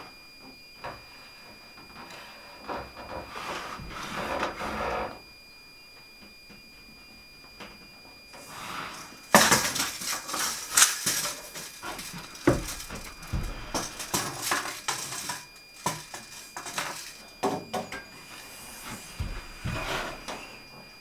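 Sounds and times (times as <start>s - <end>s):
hand tools clattering and clinking: 8.4s - 18.2s
heavy thumps: 8.6s - 18.2s, 18.8s - 20.3s.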